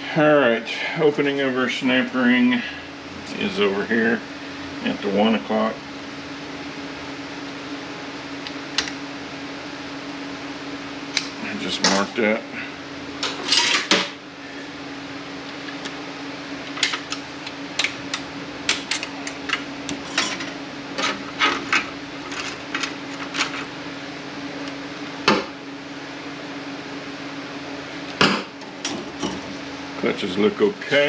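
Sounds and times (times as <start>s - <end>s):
steady low hum: 0.0s - 31.0s
metal parts clicking and clinking: 18.7s - 23.7s.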